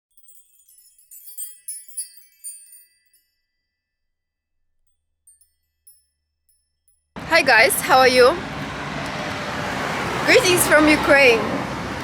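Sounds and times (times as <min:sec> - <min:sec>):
faint high tinkles: 0:00.0 - 0:07.2
high bright chiming tones: 0:00.1 - 0:04.1, 0:04.8 - 0:07.2.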